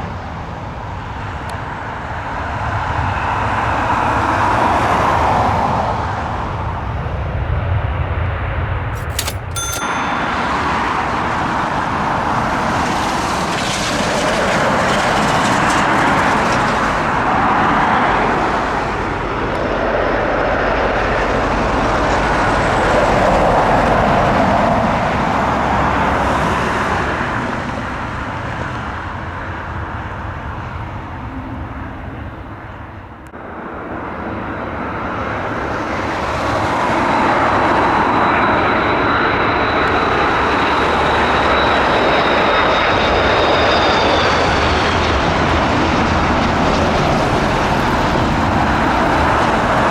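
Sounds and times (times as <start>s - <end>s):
high engine whine: 25.1s - 49.9s.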